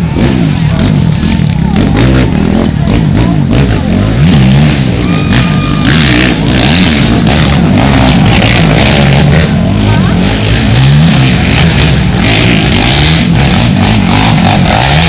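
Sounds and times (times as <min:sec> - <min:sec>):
racing engines revving: 0:00.0 - 0:15.0.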